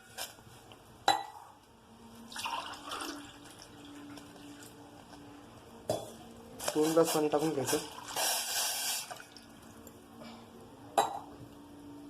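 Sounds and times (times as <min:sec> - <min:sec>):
water pouring into a pot: 0:02.3 - 0:04.7, 0:07.8 - 0:09.5.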